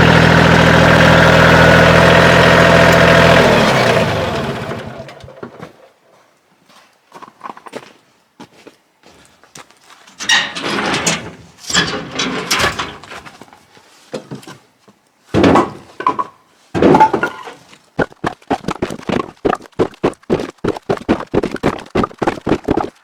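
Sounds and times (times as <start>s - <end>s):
firewood clattering: 10.2s - 14.6s, 15.3s - 23.0s.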